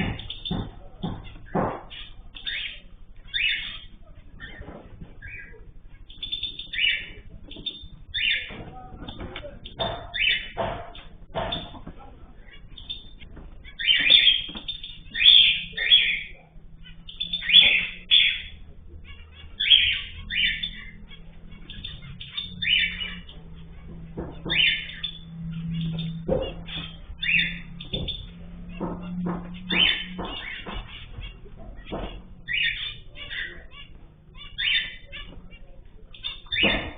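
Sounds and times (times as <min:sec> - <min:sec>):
cage birds rasping chirps: 0:00.0 - 0:36.9
faint low hum: 0:00.0 - 0:36.9
soft bird chirping: 0:00.0 - 0:36.9.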